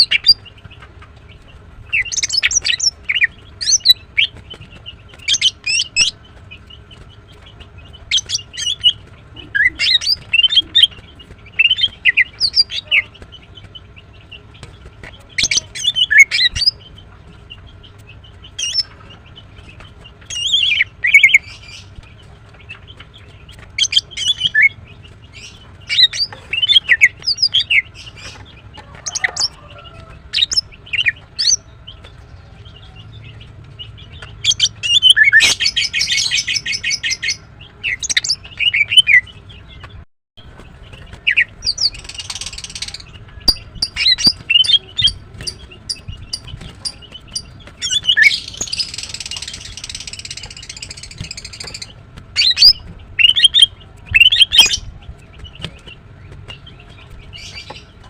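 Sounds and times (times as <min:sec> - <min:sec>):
bird chirping: 0:00.0 - 0:58.0
bird rattling trill: 0:41.2 - 0:54.8.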